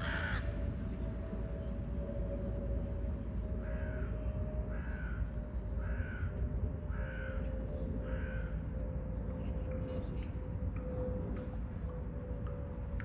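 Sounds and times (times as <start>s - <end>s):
crow cawing: 0.0s - 0.5s, 3.6s - 4.1s, 4.7s - 5.2s, 5.8s - 6.3s, 6.9s - 7.4s, 8.0s - 8.6s
low background rumble: 0.0s - 13.0s.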